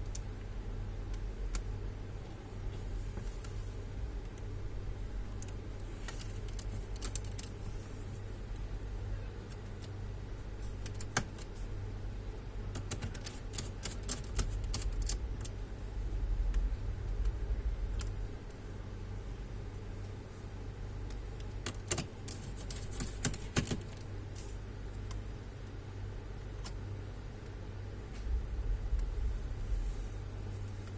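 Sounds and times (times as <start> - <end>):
steady low hum: 0.0 - 30.9
clicks and taps on computer parts: 10.6 - 11.6, 12.7 - 15.6, 21.1 - 24.1.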